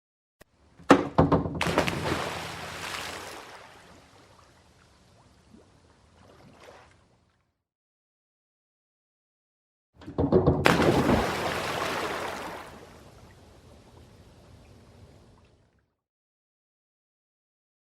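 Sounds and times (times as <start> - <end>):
body diving into water splash: 1.6 - 4.3, 10.6 - 13.0
faint water gurgles: 2.3 - 7.5, 10.9 - 15.9.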